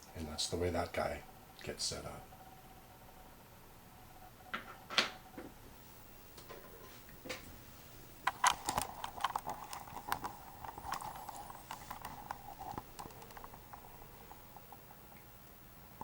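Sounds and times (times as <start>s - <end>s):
faint steady hum: 0.0s - 16.0s
small hard parts clicking: 8.3s - 15.0s.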